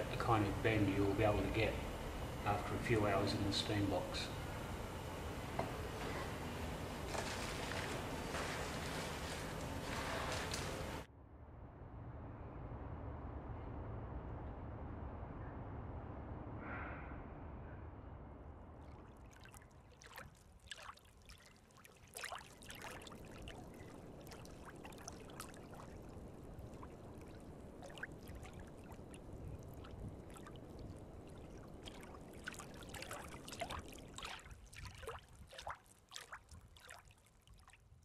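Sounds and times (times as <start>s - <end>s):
water trickling and splashing: 7.0s - 11.1s, 18.8s - 38.0s
water drips plinking: 18.8s - 37.9s.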